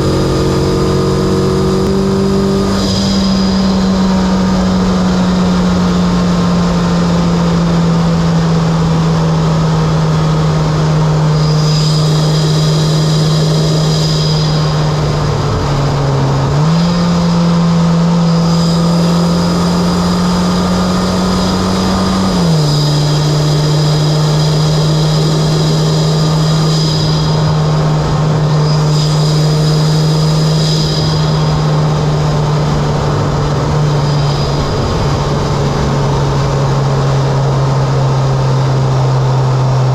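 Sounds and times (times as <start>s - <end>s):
car engine droning: 0.0s - 39.9s.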